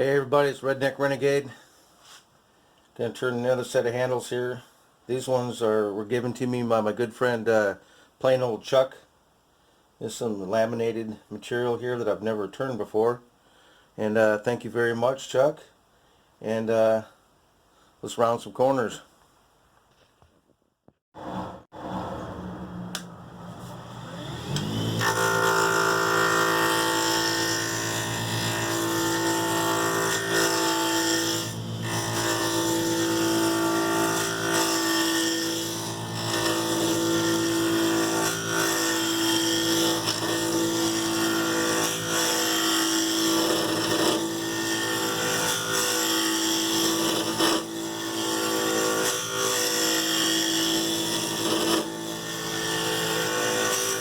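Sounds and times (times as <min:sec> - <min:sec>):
wood lathe motor running: 0:24.0 - 0:54.0
gouge cutting wood: 0:24.4 - 0:54.0.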